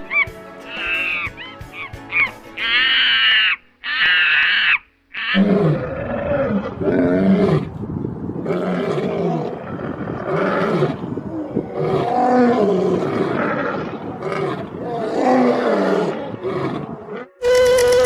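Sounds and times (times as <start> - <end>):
large animal deep wavering calls: 0.1 - 7.7.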